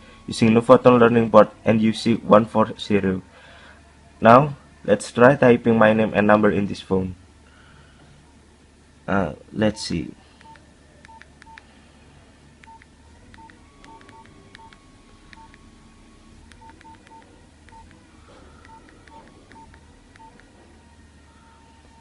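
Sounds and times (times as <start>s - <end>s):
short keypad beeps: 13.4s - 15.6s, 16.5s - 17.9s, 18.6s - 20.4s.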